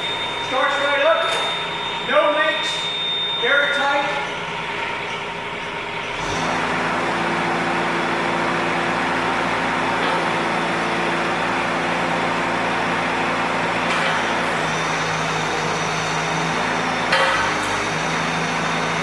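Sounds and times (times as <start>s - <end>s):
diesel engine running: 4.3s - 19.0s.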